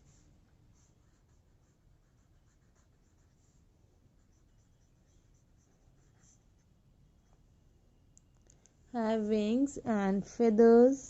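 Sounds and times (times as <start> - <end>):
pen scratching while writing: 0.8 - 3.6, 4.2 - 6.6.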